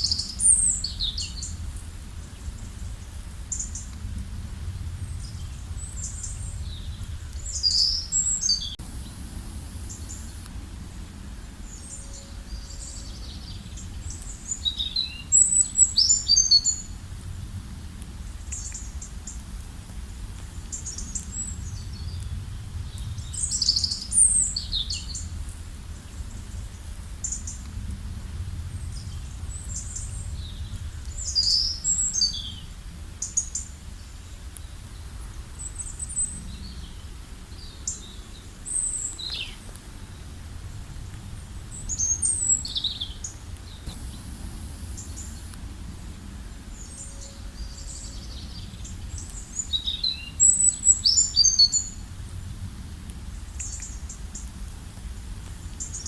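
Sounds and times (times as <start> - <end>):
songbird chirping: 0.0 - 4.0, 4.8 - 9.2, 11.2 - 17.0, 41.4 - 52.1
low background rumble: 0.0 - 56.0.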